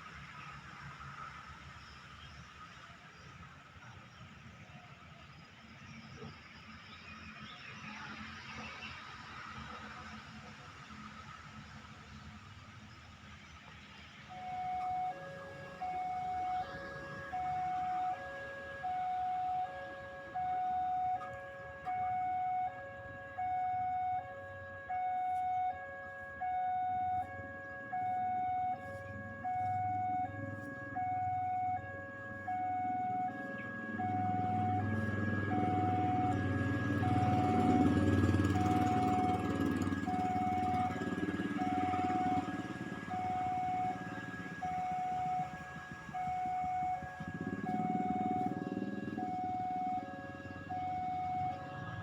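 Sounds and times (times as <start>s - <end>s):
level crossing two-tone alarm: 14.3s - 52.0s.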